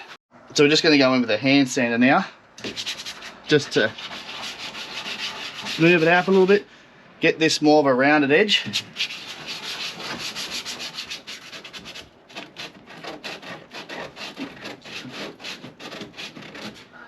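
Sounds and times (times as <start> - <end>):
sandpaper rubbing on fiberglass: 2.6 - 6.6, 8.6 - 17.0.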